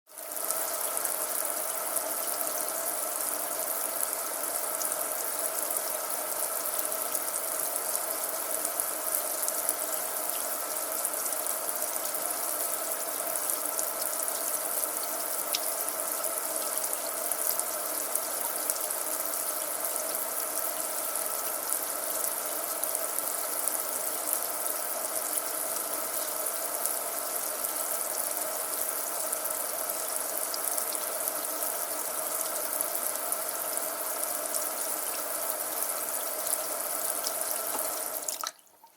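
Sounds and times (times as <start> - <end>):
tap water pouring into sink: 36.4 - 38.9.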